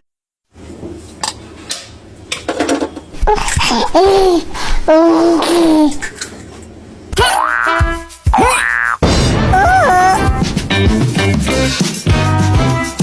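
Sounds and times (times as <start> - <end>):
cartoon character vocal sounds: 7.2 - 10.4.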